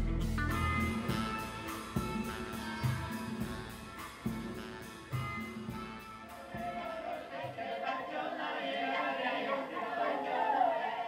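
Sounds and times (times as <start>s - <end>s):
plucked strings with bass: 0.0s - 5.5s
voices singing: 0.7s - 11.0s.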